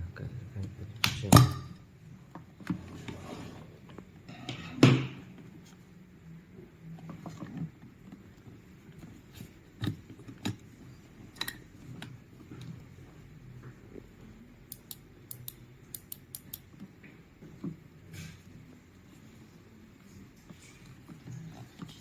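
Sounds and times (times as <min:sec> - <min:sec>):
small clicks and taps of hand work: 0:14.7 - 0:17.2.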